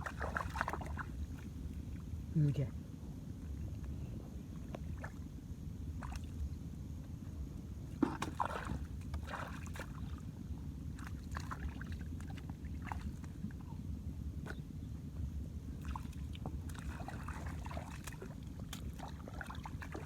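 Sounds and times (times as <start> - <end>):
shallow water splashing: 0.0 - 2.1, 7.9 - 13.8, 15.7 - 20.0.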